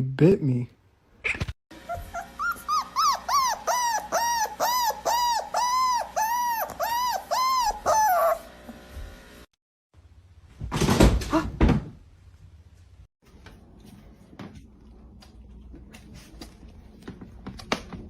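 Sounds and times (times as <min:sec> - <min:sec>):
dog yelping whines: 0:01.8 - 0:08.5.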